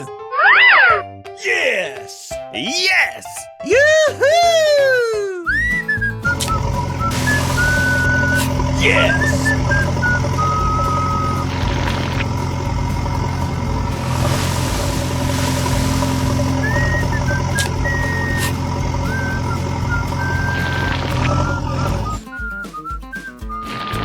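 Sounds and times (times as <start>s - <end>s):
high whistle-like tones: 5.5s - 24.0s
vehicle engine running: 6.2s - 22.2s.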